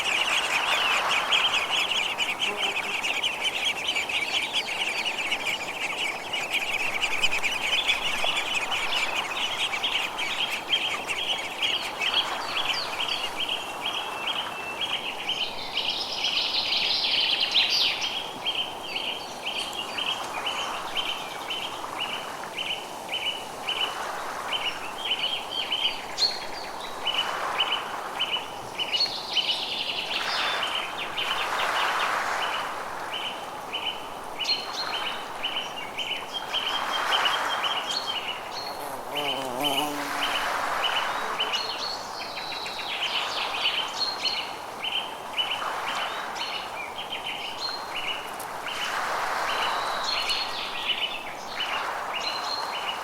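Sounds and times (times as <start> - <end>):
birds chirping and calling: 0.0 - 13.4
soft hiss: 32.4 - 52.4.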